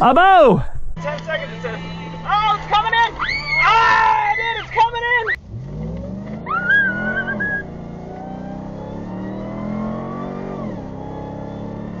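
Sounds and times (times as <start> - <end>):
vehicle engine accelerating: 0.9 - 12.0
high-pitched rising tone: 5.7 - 12.0.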